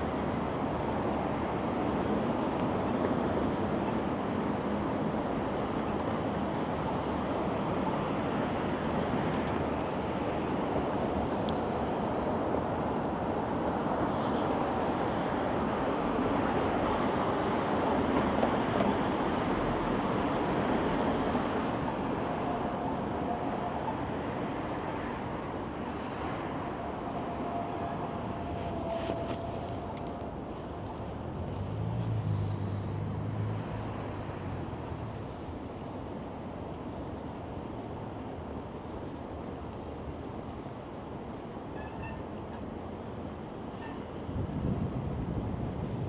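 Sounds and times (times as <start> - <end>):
wind: 0.0 - 46.0
street traffic rushing: 7.2 - 41.7.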